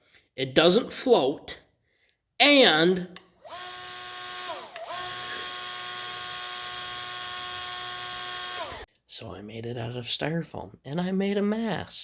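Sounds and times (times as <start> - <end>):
electric motor whine: 3.4 - 8.9.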